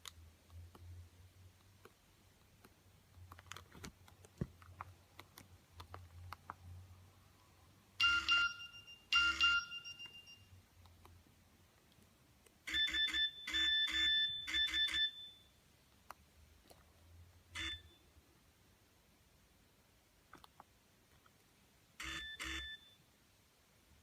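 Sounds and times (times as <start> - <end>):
mobile phone ringtone melody: 8.0 - 10.5, 12.7 - 15.5, 22.0 - 23.0.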